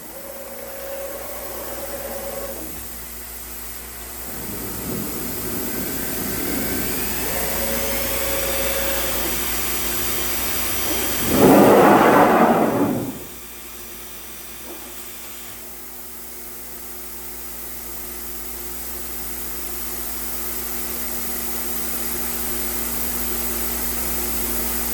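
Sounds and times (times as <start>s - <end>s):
cnc router whirring: 0.0s - 11.4s.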